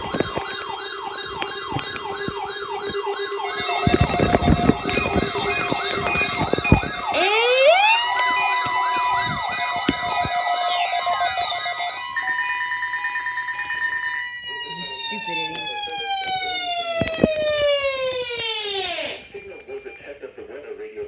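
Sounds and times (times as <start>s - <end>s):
electronic siren alarm yelping: 0.0s - 20.1s
rising steady tone: 6.4s - 14.0s.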